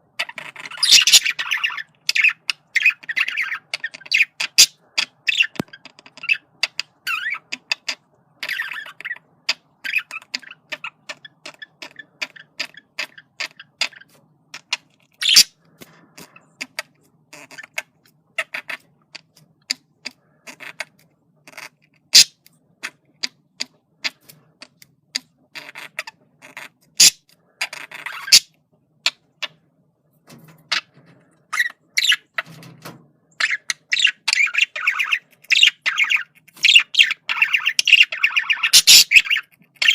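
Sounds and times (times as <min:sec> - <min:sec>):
budgerigar chattering: 0:00.2 - 0:15.5, 0:33.4 - 0:39.9.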